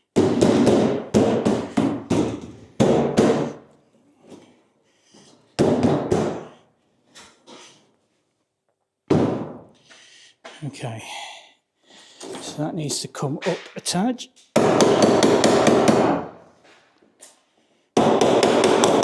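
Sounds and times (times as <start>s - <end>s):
heavy knocks on aluminium panel: 0.2s - 3.5s, 14.6s - 16.2s.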